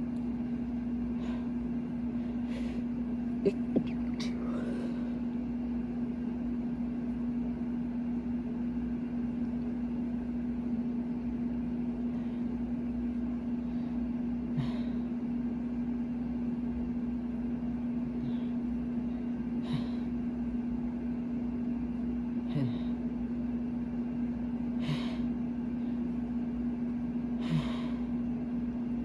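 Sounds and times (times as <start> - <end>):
air conditioner humming: 0.0 - 29.0.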